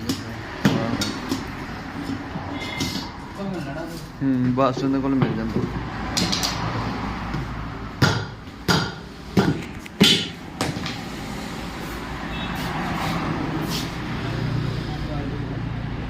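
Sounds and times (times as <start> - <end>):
road traffic rumble: 0.0 - 16.0
sharp knocks: 7.3 - 11.0.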